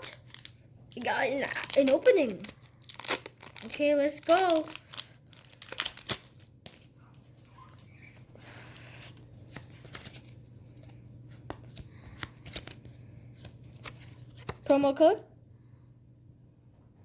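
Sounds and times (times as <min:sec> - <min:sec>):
cards sliding together: 0:08.1 - 0:14.6.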